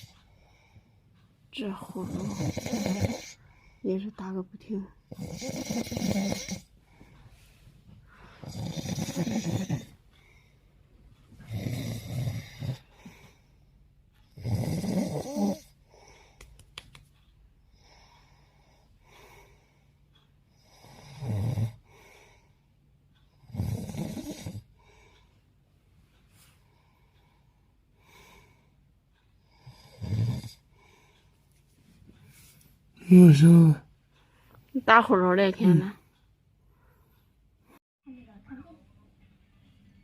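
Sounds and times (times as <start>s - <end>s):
quiet breathing: 0.0s - 14.4s, 15.5s - 16.6s, 17.5s - 33.0s, 34.0s - 34.8s, 36.0s - 37.8s
man snoring heavily: 2.0s - 3.4s, 5.1s - 6.7s, 8.4s - 9.9s, 11.4s - 13.2s, 14.3s - 15.7s, 20.6s - 22.0s, 23.4s - 24.7s, 29.5s - 30.6s.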